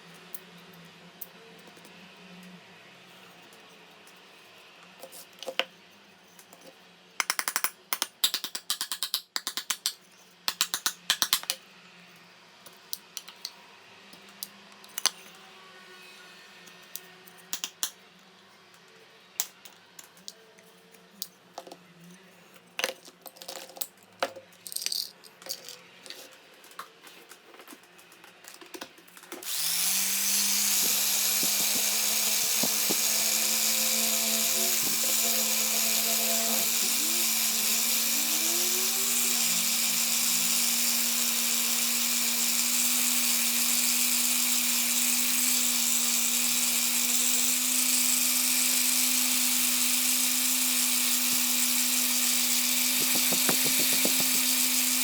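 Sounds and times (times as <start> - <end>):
small parts clicking and rattling: 22.8 - 29.8
high-speed power tool whining: 29.4 - 55.0.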